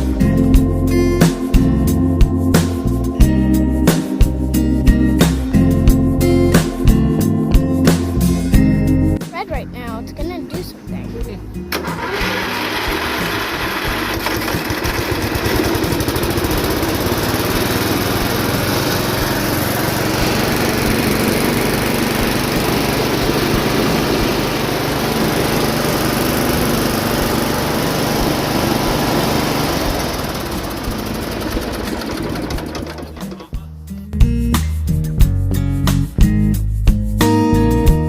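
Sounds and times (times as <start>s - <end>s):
riding lawn mower engine running: 0.0s - 33.6s.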